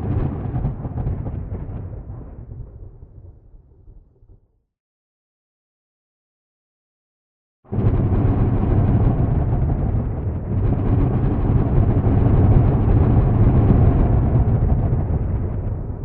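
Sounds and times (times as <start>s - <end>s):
thunder rumbling: 0.0s - 4.3s, 7.7s - 16.0s.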